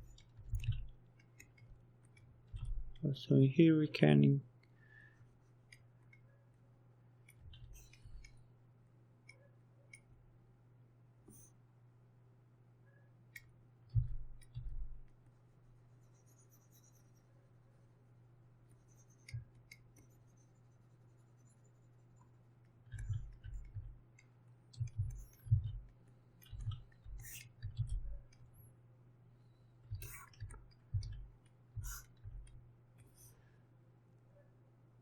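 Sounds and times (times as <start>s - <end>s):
computer mouse and keyboard clicking: 0.0s - 3.0s, 7.2s - 8.4s, 18.8s - 20.4s, 22.2s - 28.6s, 29.8s - 33.3s
steady low hum: 0.0s - 35.0s.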